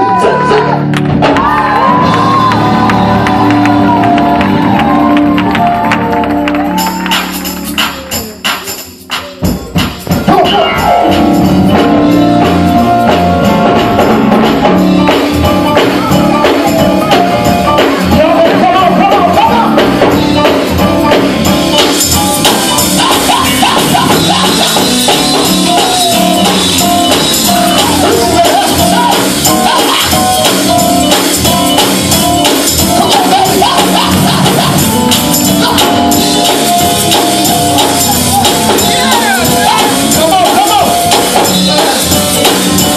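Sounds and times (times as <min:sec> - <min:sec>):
full band playing: 0:00.0 - 0:42.9
voices singing gospel: 0:21.8 - 0:42.9.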